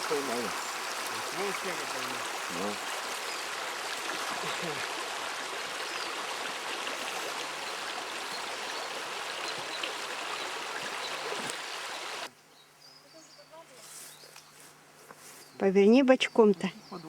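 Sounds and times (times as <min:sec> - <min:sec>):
river rushing and babbling: 0:00.0 - 0:12.3.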